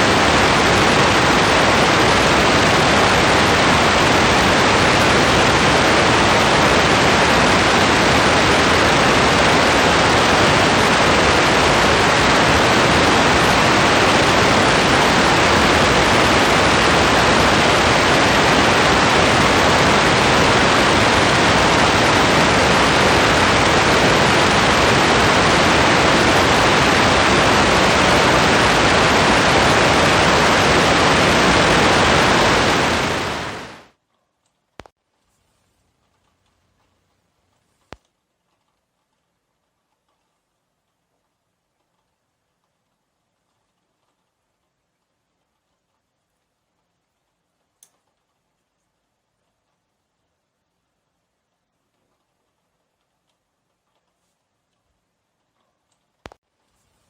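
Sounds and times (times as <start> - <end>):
steady rain hiss: 0.0 - 34.0.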